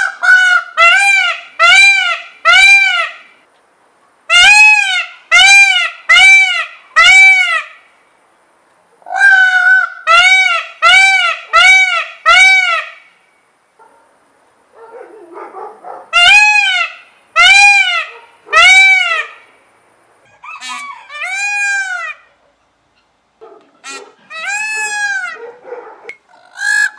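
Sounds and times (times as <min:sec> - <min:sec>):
peacock calling loudly: 0:00.0 - 0:03.4, 0:04.3 - 0:07.9, 0:09.0 - 0:13.2, 0:16.1 - 0:19.6, 0:20.2 - 0:26.9.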